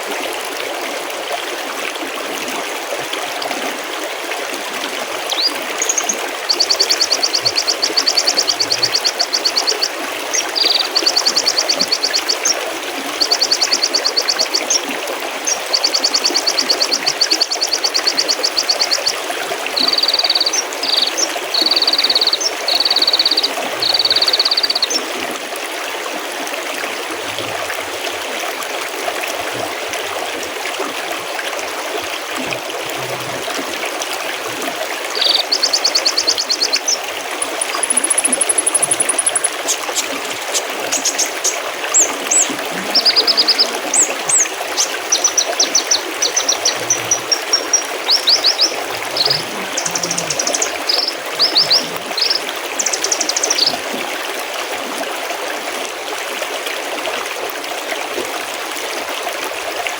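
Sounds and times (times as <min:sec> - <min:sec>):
mountain stream babbling: 0:00.0 - 0:59.9
songbird trills and whistles: 0:05.3 - 0:12.6, 0:19.8 - 0:25.0, 0:35.2 - 0:53.8.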